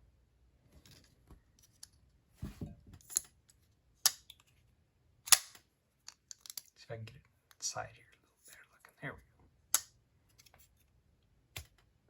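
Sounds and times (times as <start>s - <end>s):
folding knife metal clicks: 5.3s - 6.7s.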